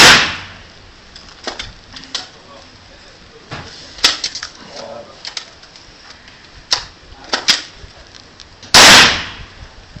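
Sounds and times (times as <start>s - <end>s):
loud rifle shot: 0.0s - 0.6s, 8.7s - 9.5s.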